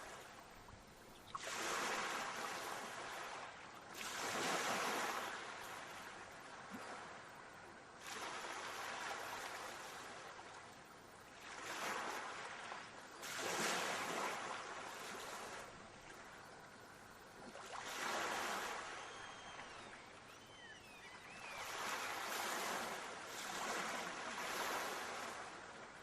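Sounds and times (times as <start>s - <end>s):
sea waves washing onto shore: 1.3s - 7.4s, 17.6s - 20.3s, 21.6s - 26.0s.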